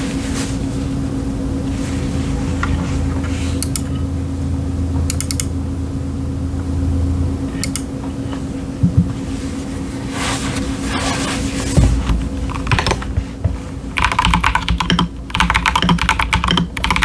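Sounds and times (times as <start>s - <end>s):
steady background hum: 0.0s - 17.0s
sharp clicks: 3.6s - 3.9s, 5.1s - 5.5s, 7.6s - 7.9s.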